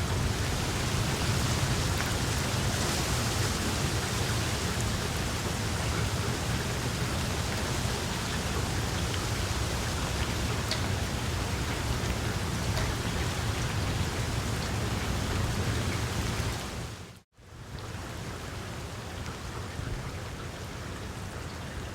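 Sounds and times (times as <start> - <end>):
rain falling on leaves: 0.0 - 21.9.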